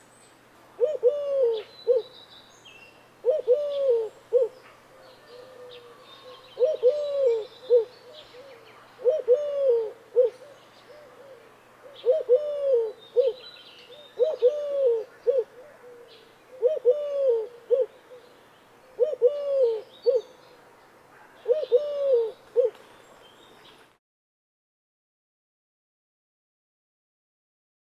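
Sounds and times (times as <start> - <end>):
dove cooing: 0.8 - 2.2, 3.2 - 18.3, 18.9 - 20.3, 21.2 - 22.8
small birds chirping: 1.6 - 9.1, 12.9 - 16.6.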